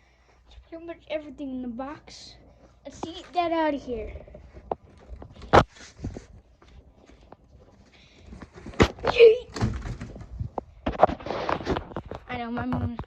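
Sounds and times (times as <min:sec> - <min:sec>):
knocks and scrapes: 0:02.9 - 0:13.0.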